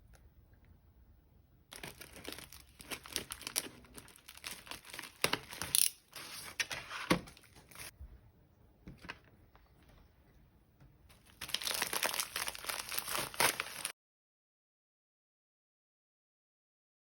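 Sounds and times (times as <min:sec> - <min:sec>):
packaging crinkling and tearing: 0:01.7 - 0:07.9, 0:11.1 - 0:13.9.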